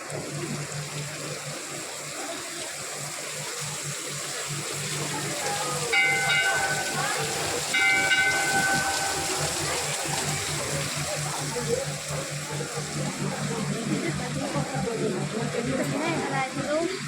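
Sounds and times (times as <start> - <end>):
crowd murmur: 0.1 - 17.0.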